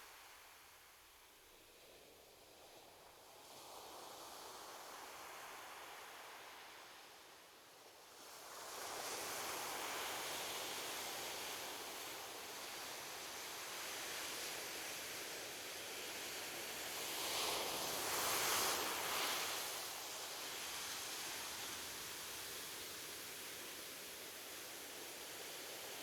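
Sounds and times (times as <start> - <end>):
waves hissing on a beach: 15.6 - 26.0.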